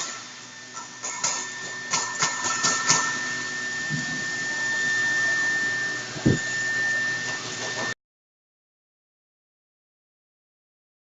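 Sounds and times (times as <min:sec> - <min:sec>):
router spindle whining: 0:00.0 - 0:08.0
low thump: 0:06.2 - 0:06.4.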